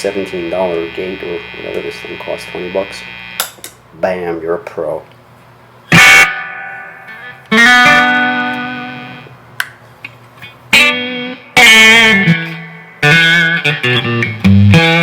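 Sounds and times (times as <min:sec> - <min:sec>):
electric guitar strummed chords: 0:00.0 - 0:03.5, 0:05.9 - 0:09.4, 0:10.7 - 0:15.0.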